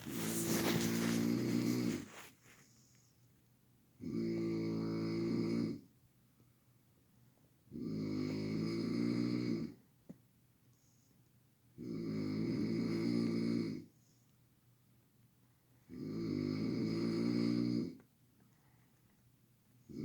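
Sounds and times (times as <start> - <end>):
person snoring loudly: 0.0 - 2.2, 15.9 - 18.0
quiet breaths: 0.0 - 3.6, 10.6 - 11.4, 12.0 - 14.5, 15.4 - 20.0.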